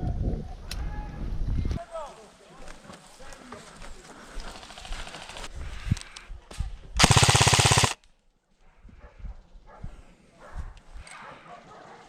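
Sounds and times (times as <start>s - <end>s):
airsoft gun automatic burst: 7.0s - 8.0s.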